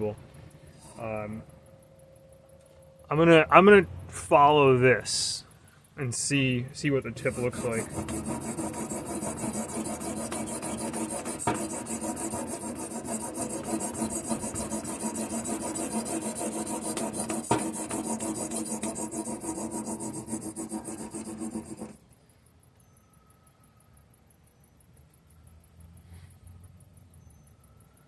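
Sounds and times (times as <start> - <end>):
knife rasping on sharpening stone: 7.2 - 22.0.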